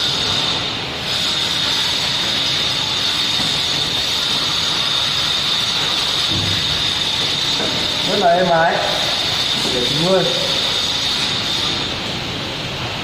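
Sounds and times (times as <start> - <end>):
cutting saw whirring with high whine: 0.0 - 12.0.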